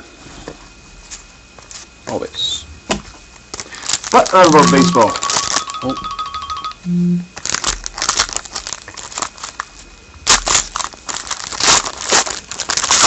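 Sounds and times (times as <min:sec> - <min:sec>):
wrapper tearing and crinkling: 0:03.5 - 0:05.8, 0:07.4 - 0:13.0.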